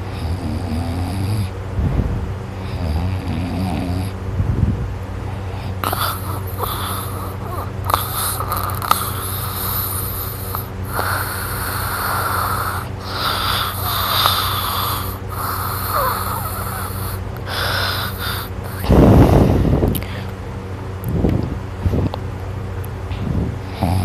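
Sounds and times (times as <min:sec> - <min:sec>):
steady low hum: 0:00.0 - 0:24.0
person snoring: 0:05.6 - 0:19.5, 0:23.7 - 0:24.0.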